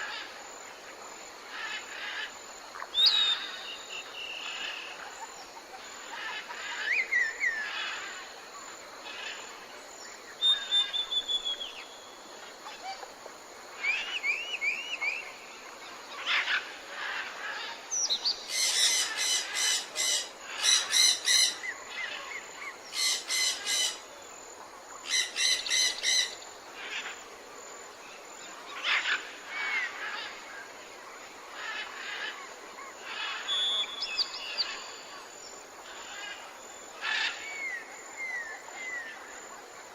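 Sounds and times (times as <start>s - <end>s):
background hiss: 0.0s - 39.9s
birds singing: 10.1s - 13.0s, 33.0s - 35.1s.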